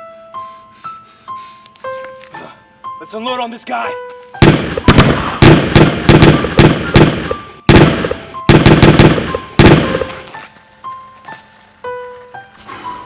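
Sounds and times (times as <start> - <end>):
gunshots: 4.4 - 10.3.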